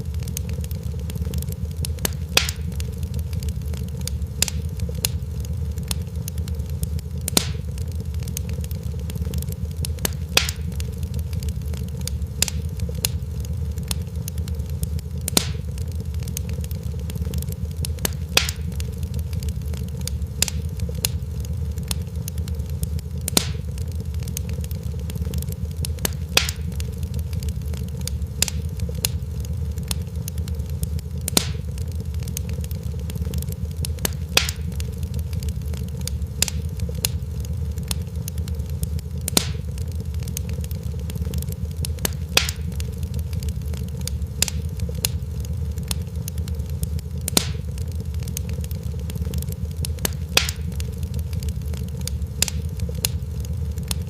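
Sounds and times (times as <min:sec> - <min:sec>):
wood fire crackling: 0:00.0 - 0:54.0.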